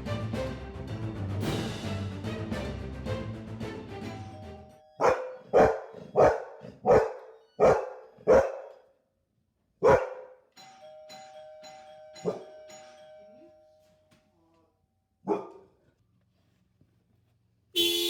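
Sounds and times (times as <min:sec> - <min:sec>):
dog barking: 0:05.0 - 0:08.9, 0:09.8 - 0:10.4, 0:15.2 - 0:15.8.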